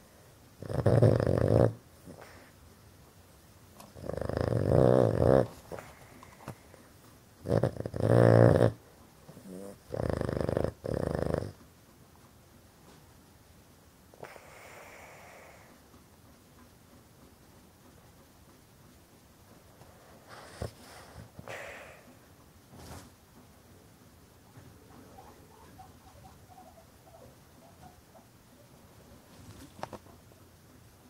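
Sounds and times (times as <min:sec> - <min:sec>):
dog snoring: 0:00.6 - 0:02.5, 0:03.8 - 0:06.0, 0:07.4 - 0:11.6.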